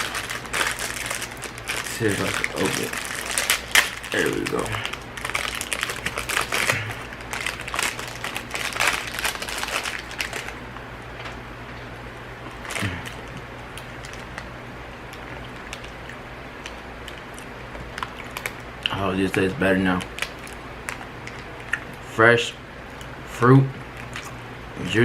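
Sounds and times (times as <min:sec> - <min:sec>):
plastic wrapper crinkling: 0:00.0 - 0:10.6, 0:12.6 - 0:14.5, 0:15.1 - 0:21.9.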